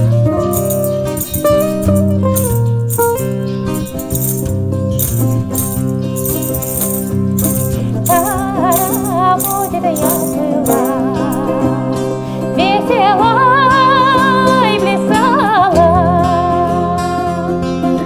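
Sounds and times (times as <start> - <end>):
bouzouki: 0.0 - 18.0
guitar: 0.0 - 18.0
shaker rattling: 0.5 - 11.7
woman singing wordless melody: 8.1 - 18.0.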